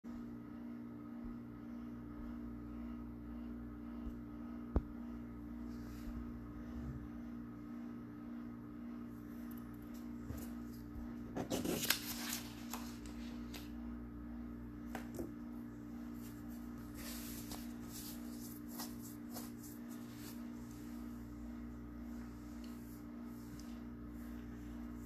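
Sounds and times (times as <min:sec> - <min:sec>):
low electrical hum: 0:00.1 - 0:25.0.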